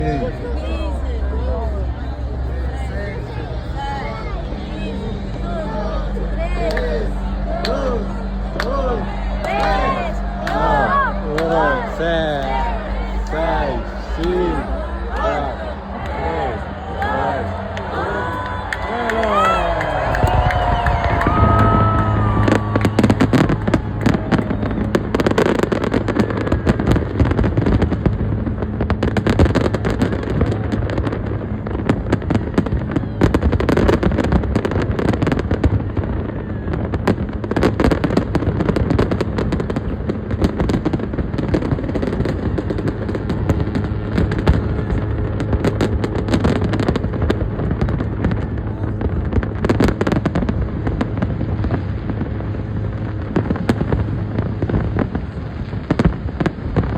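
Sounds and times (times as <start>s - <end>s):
steady low drone: 0.0s - 56.9s
fireworks bangs and crackling: 17.7s - 56.9s.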